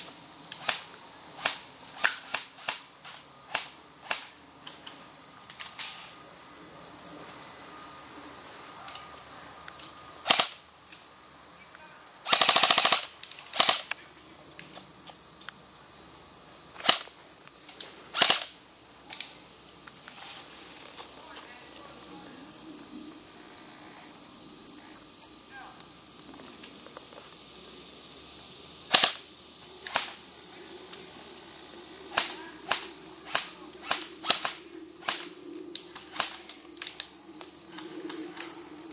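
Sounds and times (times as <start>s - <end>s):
crickets chirping: 0.0s - 38.9s
airsoft gun shots: 18.2s - 18.5s, 28.9s - 29.2s.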